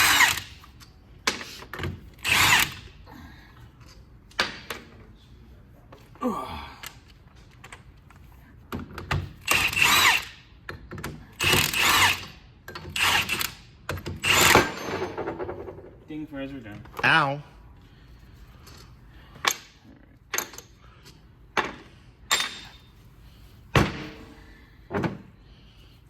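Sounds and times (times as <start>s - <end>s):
impact wrench bursts: 0.0s - 0.7s, 1.3s - 3.0s, 9.3s - 10.6s, 11.3s - 15.3s.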